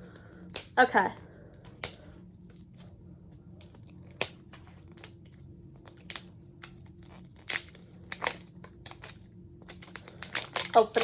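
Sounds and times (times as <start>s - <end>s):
plastic wrapping crinkling and tearing: 6.9s - 11.0s.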